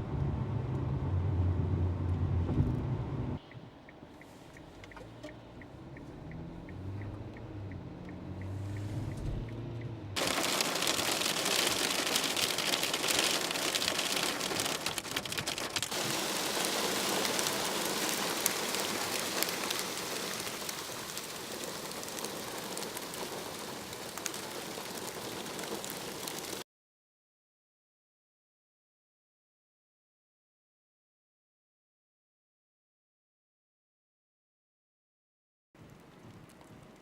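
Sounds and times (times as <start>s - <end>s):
vehicle low hum: 0.0s - 13.8s
quick regular ticking: 3.4s - 15.9s
wind and rain hiss: 3.6s - 9.3s, 10.2s - 26.6s, 35.8s - 37.0s
rain spatter on microphone: 4.2s - 26.6s.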